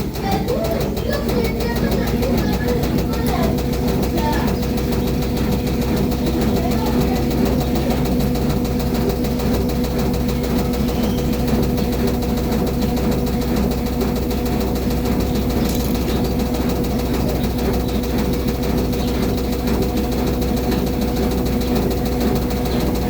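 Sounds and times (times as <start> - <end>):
washing machine spinning hum: 0.0 - 23.0.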